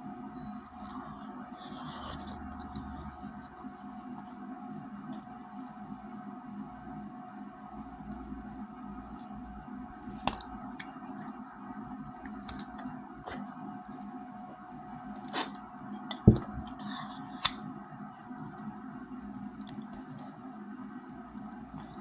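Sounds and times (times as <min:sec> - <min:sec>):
steady hum: 0:00.0 - 0:22.0
wet squishy mouth noises: 0:14.9 - 0:17.6.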